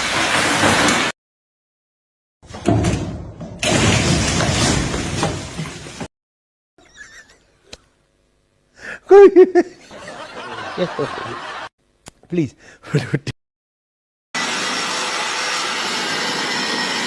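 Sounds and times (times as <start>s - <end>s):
burst of laughter: 9.1s - 11.7s.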